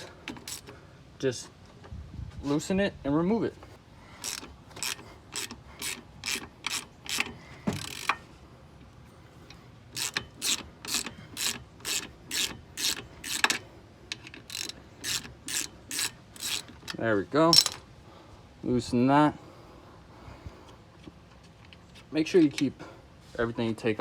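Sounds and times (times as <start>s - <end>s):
ratchet wrench clicking: 0.0s - 0.7s, 4.2s - 8.2s, 9.9s - 17.8s.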